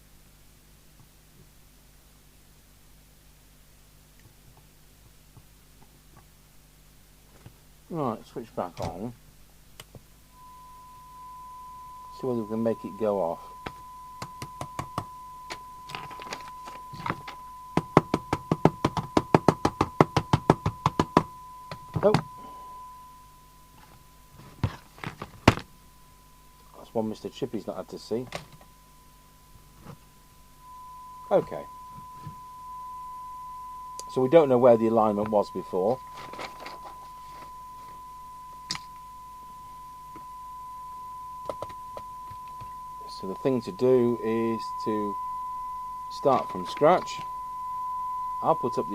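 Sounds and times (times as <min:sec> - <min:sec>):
radio test tone: 0:10.4 - 0:48.9.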